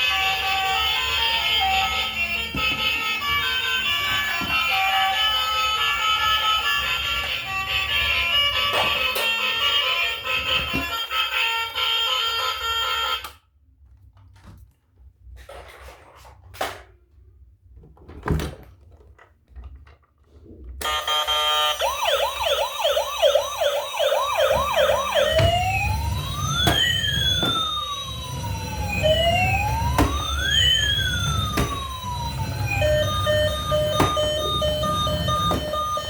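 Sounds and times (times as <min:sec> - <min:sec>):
toy electronic siren: 0:00.0 - 0:13.4, 0:20.8 - 0:36.0.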